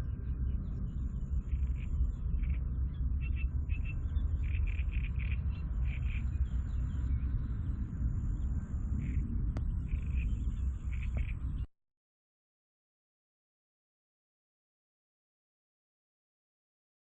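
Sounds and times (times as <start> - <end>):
steady low rumble: 0.0 - 11.7.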